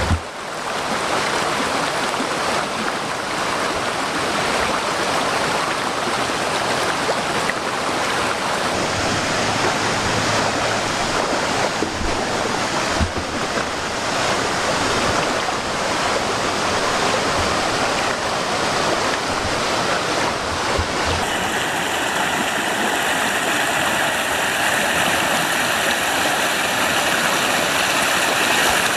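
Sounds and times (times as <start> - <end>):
waterfall pouring: 6.7 - 28.9.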